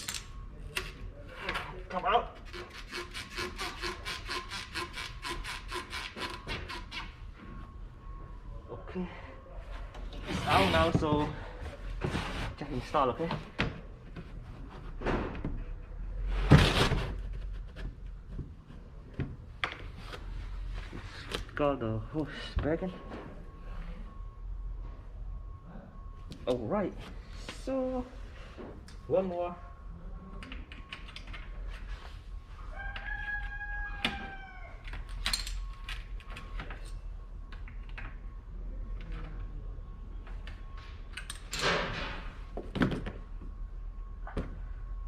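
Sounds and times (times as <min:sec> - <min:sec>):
rooster crowing: 0:32.6 - 0:35.0.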